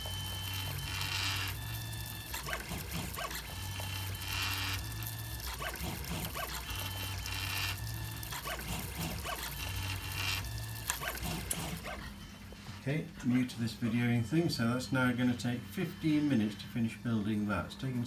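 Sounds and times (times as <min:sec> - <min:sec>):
bright rasp of printer: 0:00.0 - 0:13.5
stepper motors whining: 0:00.0 - 0:17.2.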